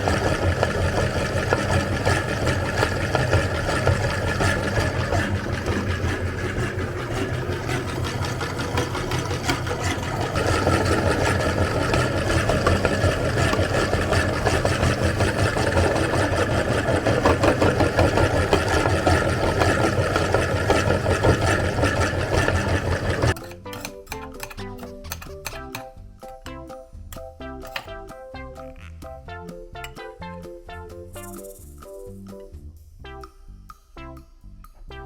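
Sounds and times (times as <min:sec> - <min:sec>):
electric meat grinder motor hum: 0:00.0 - 0:23.4.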